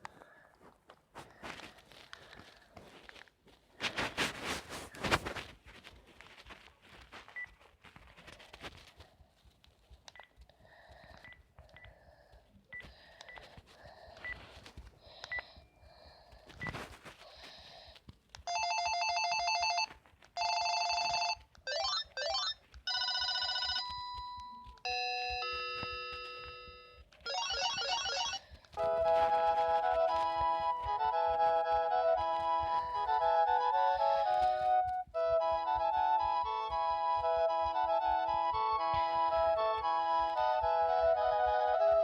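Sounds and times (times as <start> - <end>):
electronic ringtones: 24.9 - 28.4.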